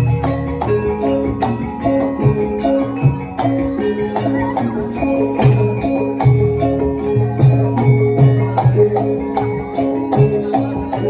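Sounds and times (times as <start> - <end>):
drum and percussion strokes: 0.0 - 11.0
metallophones struck in rhythm: 0.0 - 11.0.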